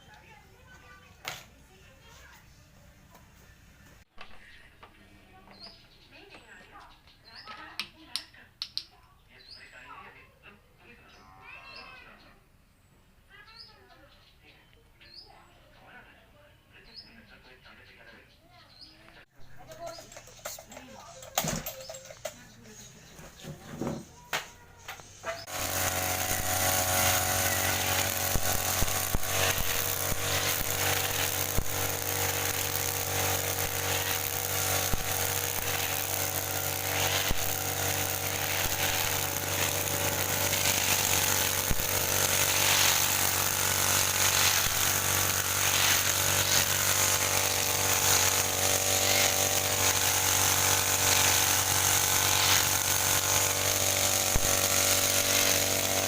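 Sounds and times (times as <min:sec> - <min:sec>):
hiss of grass cutting: 0:25.0 - 0:56.0
line trimmer motor hum: 0:25.2 - 0:56.0.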